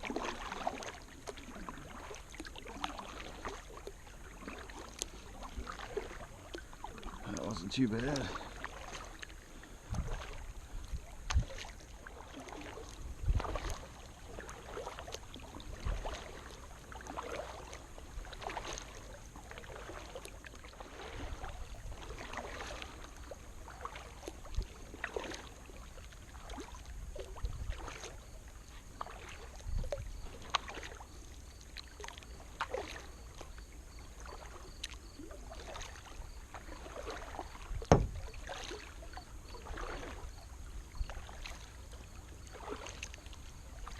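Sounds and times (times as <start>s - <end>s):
kayak paddle splashing: 0.0s - 43.9s
water lapping against hull: 0.0s - 43.9s
sharp knocks on hull: 37.8s - 38.5s.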